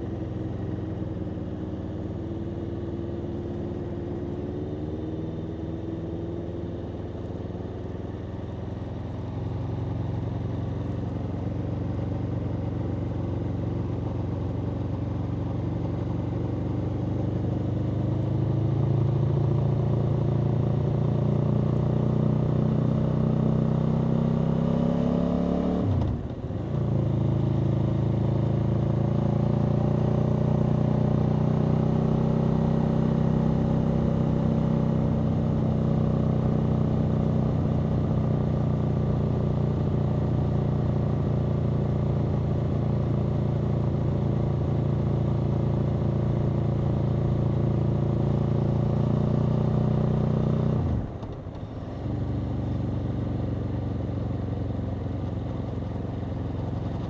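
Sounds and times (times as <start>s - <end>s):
motorcycle engine running: 26.1s - 57.0s.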